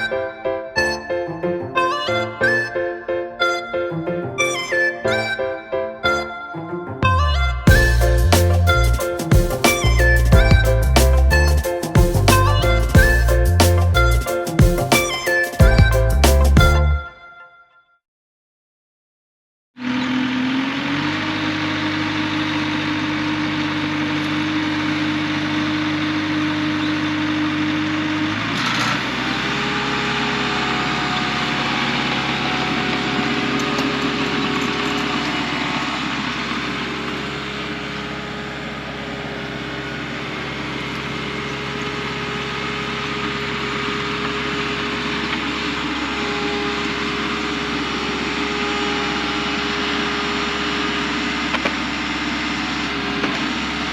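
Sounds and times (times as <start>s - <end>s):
diesel engine running: 7.1s - 15.0s, 19.8s - 53.9s.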